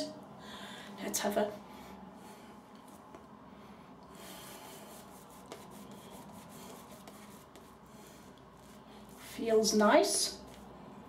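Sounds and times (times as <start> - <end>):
shaving brush rubbing lather: 4.6 - 7.8.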